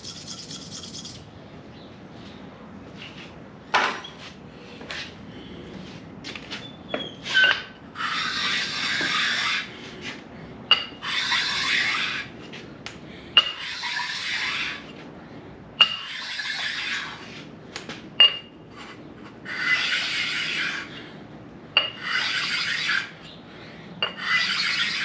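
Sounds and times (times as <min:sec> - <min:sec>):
sharpening stone rubbing on metal: 0:00.0 - 0:01.3, 0:07.4 - 0:09.7, 0:11.0 - 0:12.3, 0:13.4 - 0:14.9, 0:19.5 - 0:20.9, 0:22.0 - 0:23.1, 0:24.1 - 0:25.0.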